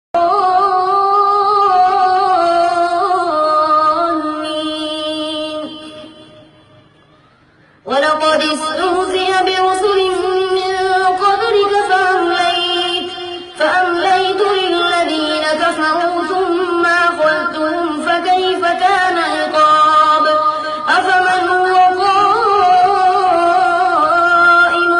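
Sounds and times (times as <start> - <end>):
man chanting recitation: 7.9 - 24.9.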